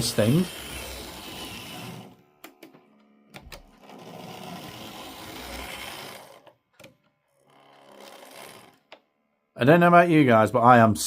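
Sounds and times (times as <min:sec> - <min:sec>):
model train motor whirring: 0:00.0 - 0:02.6, 0:03.3 - 0:09.0.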